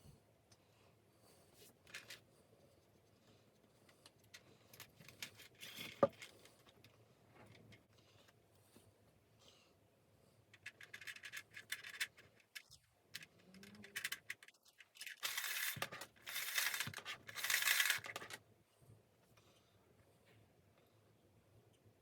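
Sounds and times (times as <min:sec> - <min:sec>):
plastic parts clicking and scraping: 0:01.8 - 0:02.2, 0:04.0 - 0:07.9, 0:10.6 - 0:18.4.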